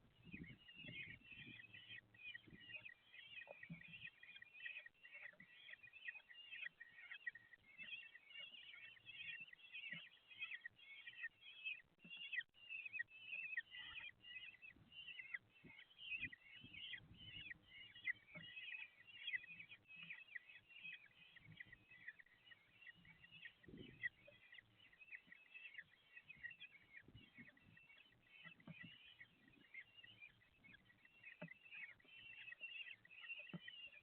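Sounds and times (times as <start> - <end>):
bird chicks begging calls: 0.0 - 34.0.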